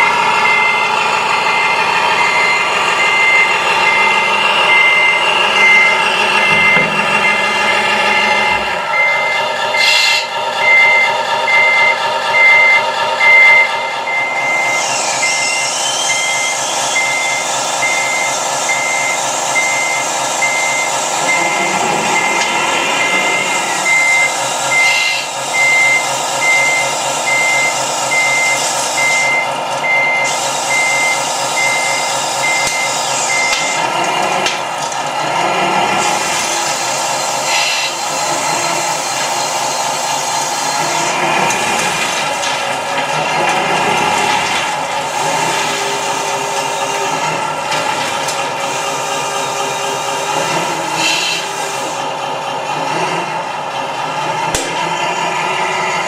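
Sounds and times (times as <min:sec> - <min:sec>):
reversing beeper: 0:00.0 - 0:33.9
electric motors whining: 0:14.0 - 0:34.6, 0:35.2 - 0:52.1.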